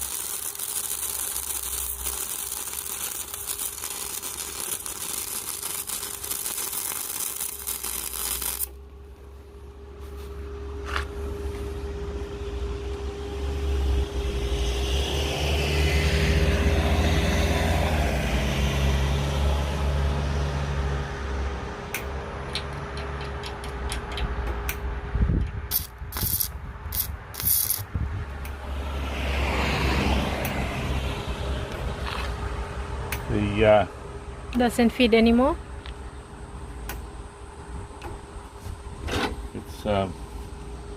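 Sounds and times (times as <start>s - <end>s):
welder arc crackling and hissing: 0.0s - 8.8s, 25.7s - 27.8s.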